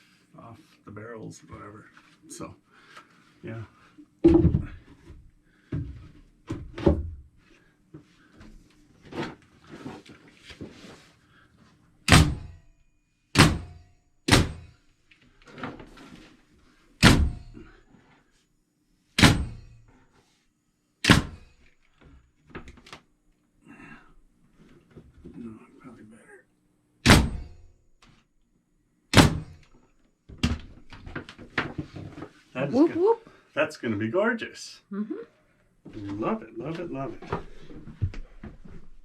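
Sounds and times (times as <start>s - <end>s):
soft thuds and knocks: 4.2s - 7.2s.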